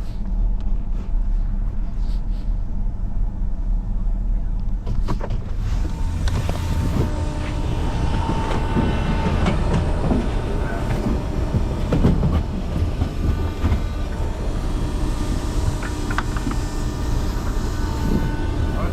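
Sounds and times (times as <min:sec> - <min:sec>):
engine running: 0:03.3 - 0:18.9
scattered knocks: 0:04.9 - 0:18.4
rattling: 0:04.9 - 0:18.9.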